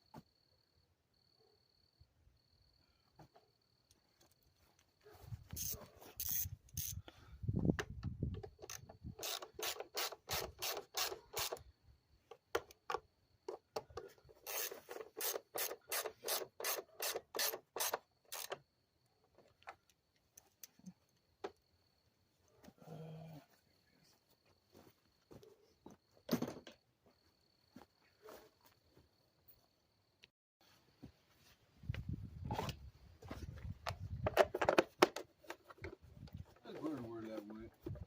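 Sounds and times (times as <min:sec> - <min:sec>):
ratchet wrench cranking: 0:05.6 - 0:07.0, 0:08.5 - 0:11.6, 0:14.4 - 0:18.6.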